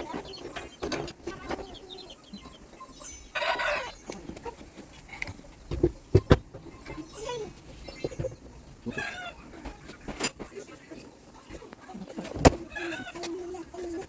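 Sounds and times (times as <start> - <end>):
chickens clucking: 0.0 - 14.0.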